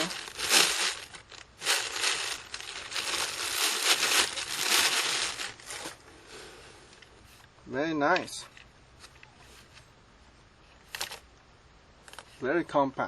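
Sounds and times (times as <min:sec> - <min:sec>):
packaging crinkling and rustling: 0:00.0 - 0:06.0, 0:10.9 - 0:11.2.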